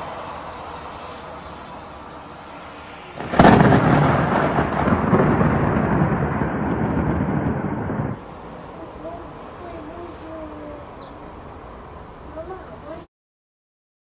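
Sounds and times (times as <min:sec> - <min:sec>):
rain hiss: 0:00.0 - 0:13.1
rolling thunder rumble: 0:02.6 - 0:10.9
loud thunderclap: 0:03.2 - 0:08.2.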